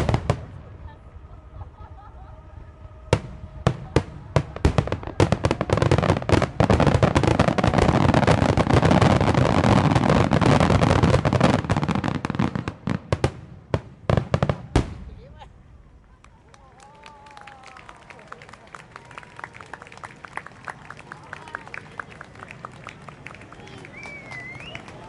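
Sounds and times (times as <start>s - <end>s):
fireworks bursting: 0.0s - 16.4s
fireworks crackle: 0.0s - 25.0s.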